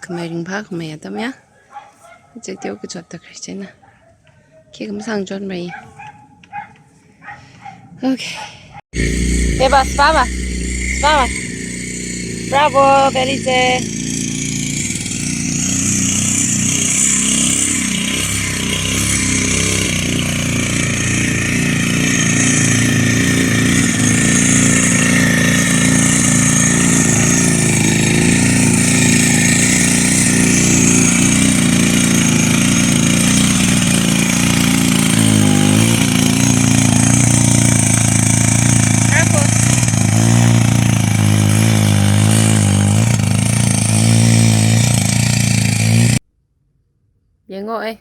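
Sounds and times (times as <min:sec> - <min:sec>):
small petrol engine running: 0:09.0 - 0:46.2.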